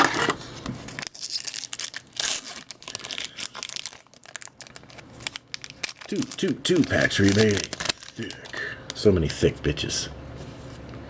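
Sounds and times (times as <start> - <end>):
wrapper tearing and crinkling: 0.9 - 8.6.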